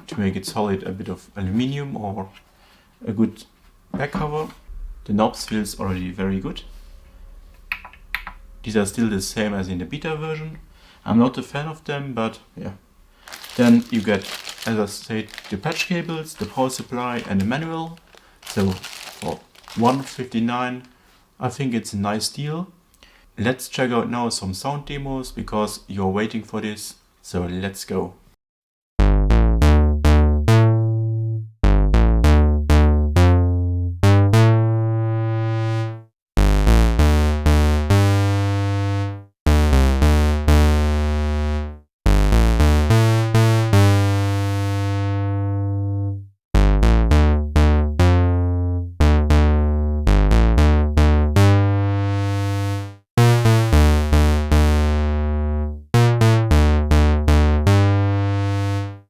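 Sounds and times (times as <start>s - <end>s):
analog synthesizer short low notes: 4.7s - 10.8s, 29.0s - 59.0s.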